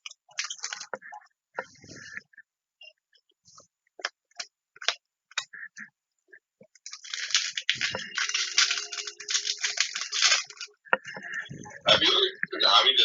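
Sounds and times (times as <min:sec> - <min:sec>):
foil wrapper crinkling and tearing: 0:00.3 - 0:00.9, 0:06.8 - 0:10.8.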